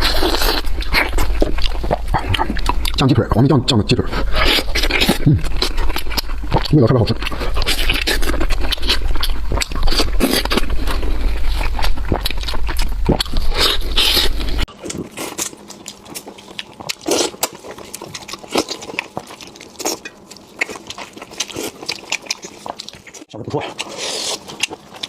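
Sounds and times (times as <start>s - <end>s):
low hum: 0.0s - 15.1s
chewing with crunches: 0.0s - 25.0s.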